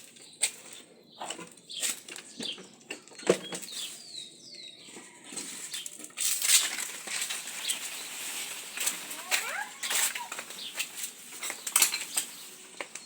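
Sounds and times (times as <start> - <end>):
bird chirps: 0.2 - 6.0
rustling and clicks: 5.0 - 13.0.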